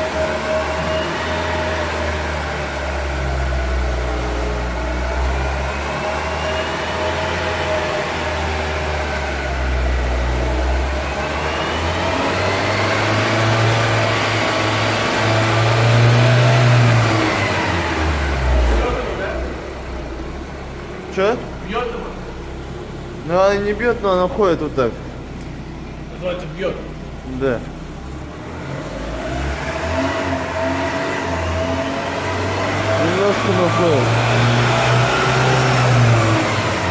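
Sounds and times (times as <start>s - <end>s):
car engine revving: 0.0s - 36.9s.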